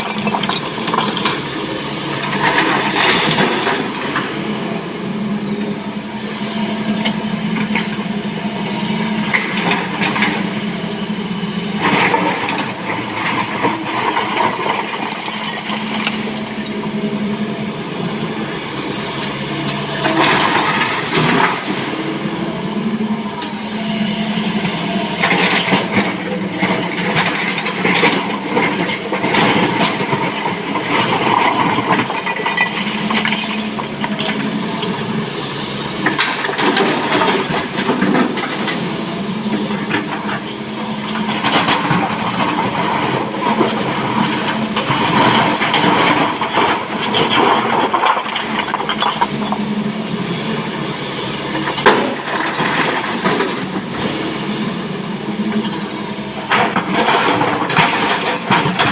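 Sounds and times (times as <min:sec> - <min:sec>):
excavator diesel engine running: 0:00.0 - 0:58.9
broken stone clattering and scraping: 0:44.9 - 0:49.6.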